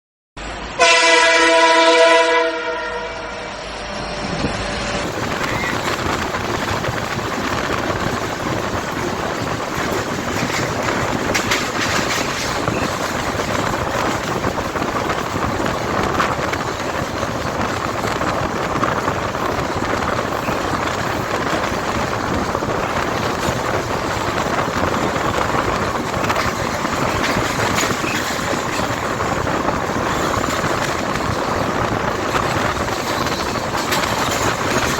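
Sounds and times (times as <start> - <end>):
train wheels rumbling on rails: 0.4 - 34.9
locomotive horn: 0.7 - 4.0.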